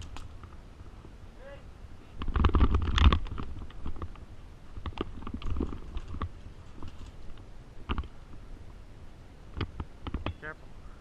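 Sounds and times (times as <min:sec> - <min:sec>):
gear clicks and knocks: 0:02.2 - 0:04.2, 0:04.8 - 0:08.1.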